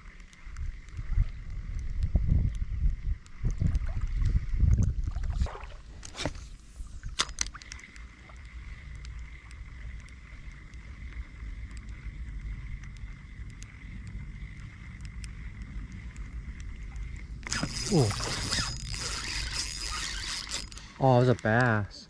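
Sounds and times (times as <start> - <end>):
faint high hum: 0.0 - 22.0
steady outdoor hiss: 0.0 - 22.0
wind buffeting microphone: 0.5 - 7.2.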